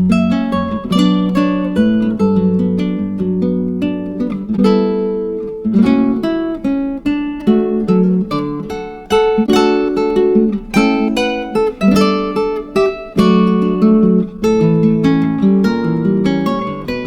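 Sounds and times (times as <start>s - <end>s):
acoustic guitar chords: 0.0s - 17.0s.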